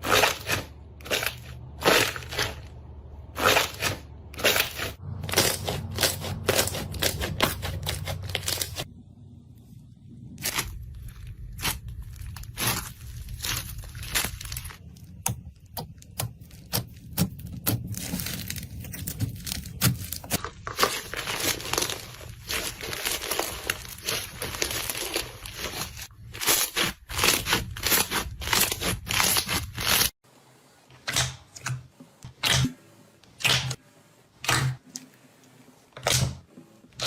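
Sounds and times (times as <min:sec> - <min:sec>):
low background hum: 0:00.2 - 0:28.9
slime crackling and popping: 0:10.4 - 0:30.1.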